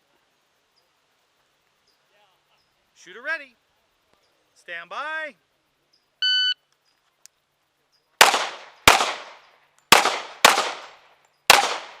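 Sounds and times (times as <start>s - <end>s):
electronic timer beep: 6.2s - 6.6s
pistol shots with echo: 8.2s - 12.0s.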